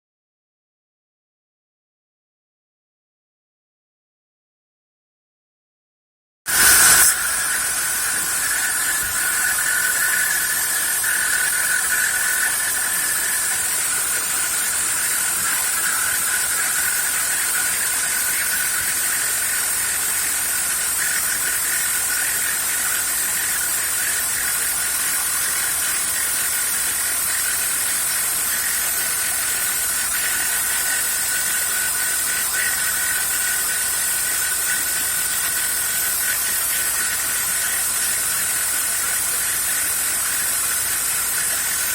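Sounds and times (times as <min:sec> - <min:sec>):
end mill cutting hiss: 0:06.5 - 0:41.9
router spindle high-pitched whine: 0:06.5 - 0:41.9.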